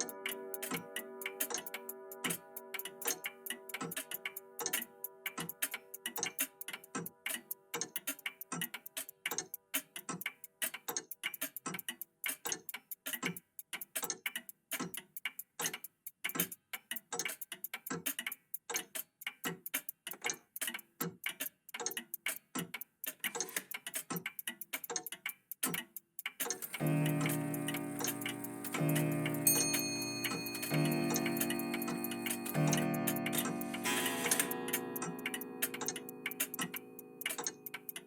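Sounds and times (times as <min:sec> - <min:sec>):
mechanical clocks ticking: 0:00.0 - 0:38.0
lingering ringing tones: 0:26.8 - 0:38.0.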